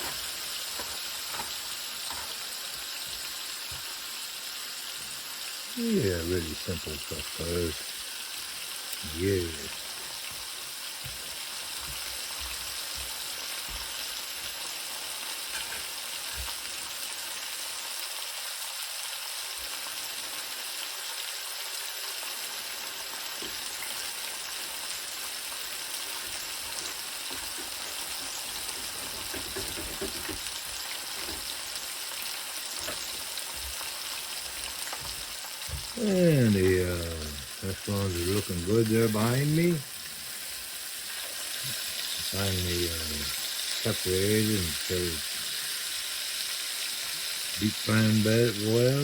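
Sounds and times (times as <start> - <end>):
food frying with sizzle: 0.0 - 49.0.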